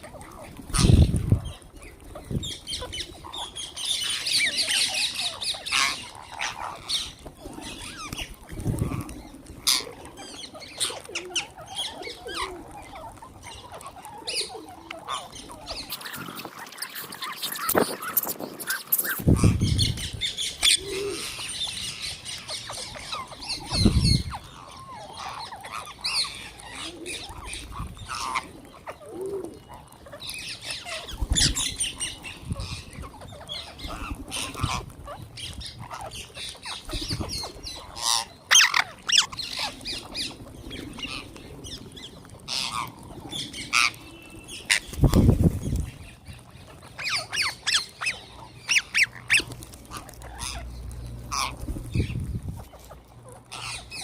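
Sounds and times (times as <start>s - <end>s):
parrots squawking: 0.0s - 54.0s.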